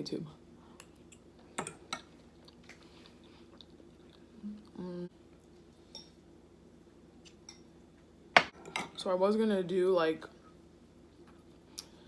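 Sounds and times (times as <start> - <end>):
person chewing food: 2.0 - 4.8.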